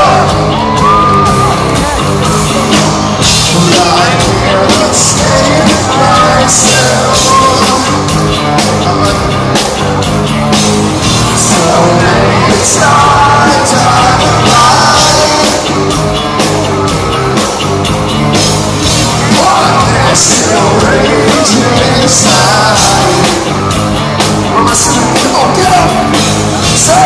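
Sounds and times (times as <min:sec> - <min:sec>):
person singing: 0:00.0 - 0:10.0, 0:11.1 - 0:16.9, 0:19.1 - 0:27.0
drums: 0:00.0 - 0:27.0
electric guitars: 0:00.0 - 0:27.0
hard rock band playing live: 0:00.0 - 0:27.0.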